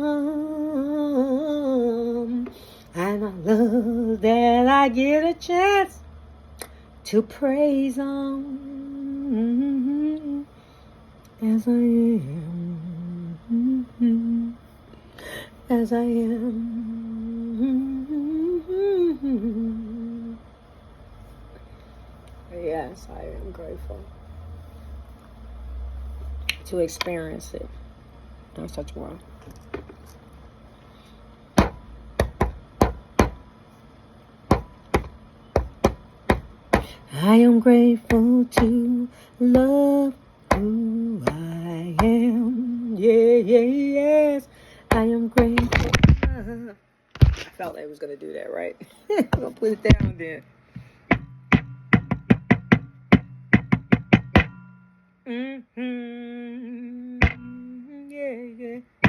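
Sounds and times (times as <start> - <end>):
woman singing: 0.0 - 6.0, 7.0 - 10.5, 11.3 - 14.7, 15.6 - 20.4, 36.8 - 46.8, 55.3 - 59.0
sharp knocks by hand: 31.6 - 33.4, 34.5 - 37.0, 40.5 - 41.4, 50.8 - 54.8, 57.2 - 57.5.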